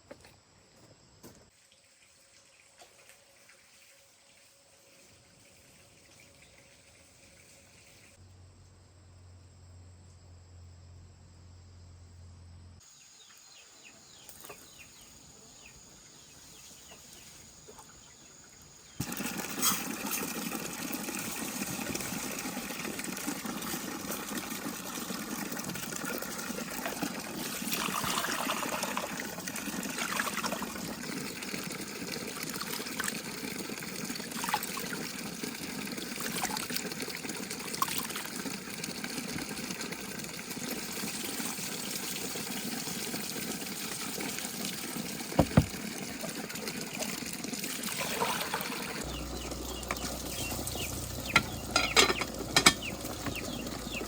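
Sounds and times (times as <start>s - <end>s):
running water: 18.8s - 54.0s.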